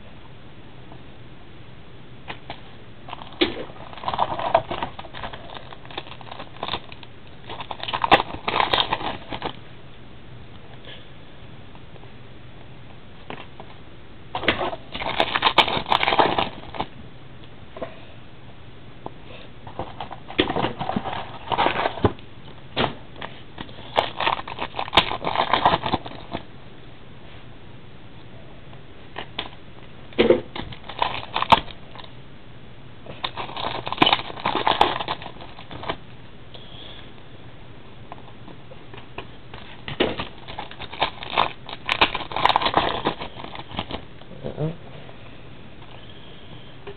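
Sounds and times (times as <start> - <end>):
cards crackly rustling and clicking: 2.3 - 9.6, 13.2 - 17.0, 19.6 - 22.6, 23.2 - 26.5, 29.1 - 32.2, 33.0 - 36.2, 38.0 - 44.3.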